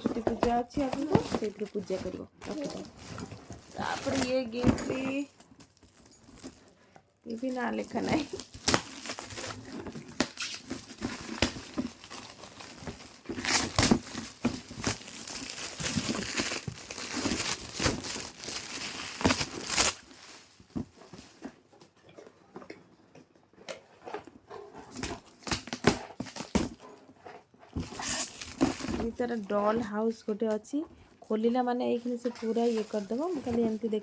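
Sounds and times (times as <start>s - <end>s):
wrapping paper crinkling and tearing: 0.8s - 20.6s.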